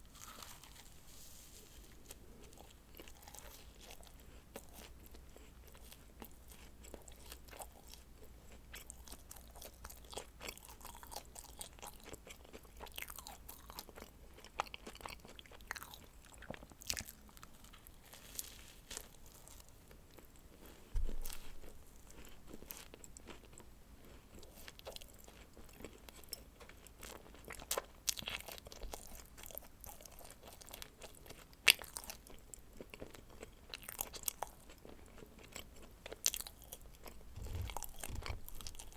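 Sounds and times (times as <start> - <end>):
low thump: 21.0 - 21.7, 37.3 - 38.9
wet chewing clicks: 36.2 - 38.9.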